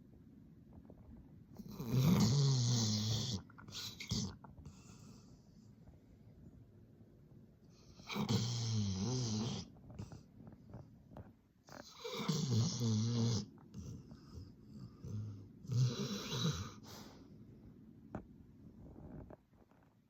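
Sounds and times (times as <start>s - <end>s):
dog snoring loudly: 1.6s - 4.4s, 7.8s - 10.2s, 11.7s - 17.1s
dog breathing: 11.7s - 17.4s.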